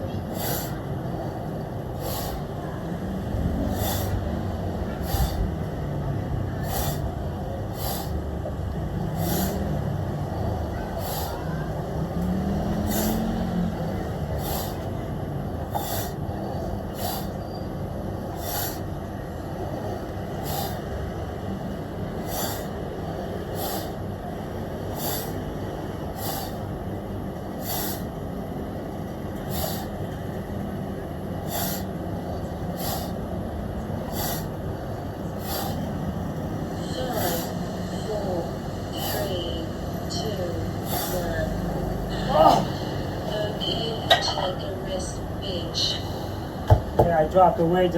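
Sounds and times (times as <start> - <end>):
steady rumbling noise: 0.0 - 47.9
person breathing hard: 0.3 - 2.8, 3.5 - 11.6, 12.7 - 17.4, 18.2 - 19.0, 19.6 - 26.8, 27.5 - 28.3, 29.4 - 30.1, 31.4 - 39.4, 40.7 - 43.3.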